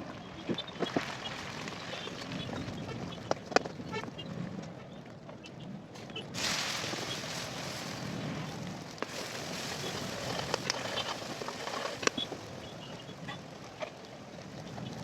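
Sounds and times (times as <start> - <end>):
oil popping and crackling: 0.8 - 2.3, 6.4 - 12.7.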